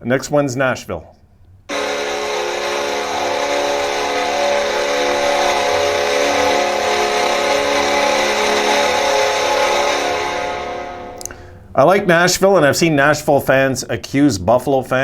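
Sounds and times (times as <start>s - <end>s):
arena goal horn blast: 1.7s - 12.1s.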